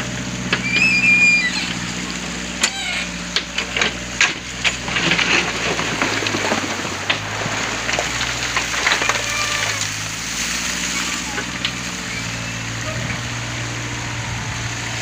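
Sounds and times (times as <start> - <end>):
diesel engine running: 0.0 - 15.0
bucket crunching sand and stones: 0.6 - 13.6.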